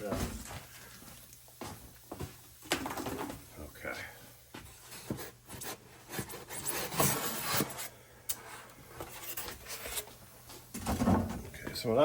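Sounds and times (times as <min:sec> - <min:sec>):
packaging rubbing and scraping: 0:04.9 - 0:07.9.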